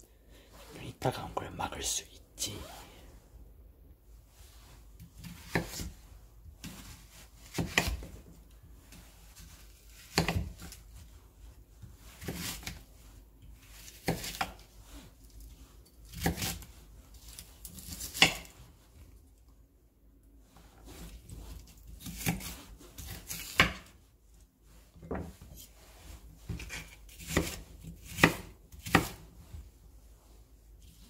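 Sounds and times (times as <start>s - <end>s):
knife cutting onion on board: 5.0s - 6.0s, 6.6s - 8.2s, 9.4s - 10.9s, 12.1s - 12.9s, 13.6s - 14.7s, 16.0s - 18.7s, 21.0s - 24.0s, 26.4s - 29.3s.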